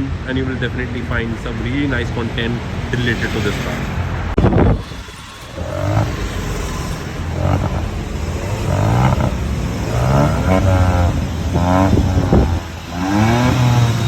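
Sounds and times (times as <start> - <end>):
car engine revving: 0.0 - 14.0.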